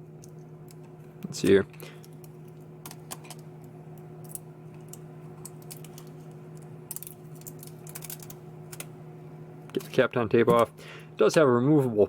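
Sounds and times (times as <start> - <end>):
steady low hum: 0.0 - 12.0
tape peeling clicks and crackles: 6.9 - 8.9.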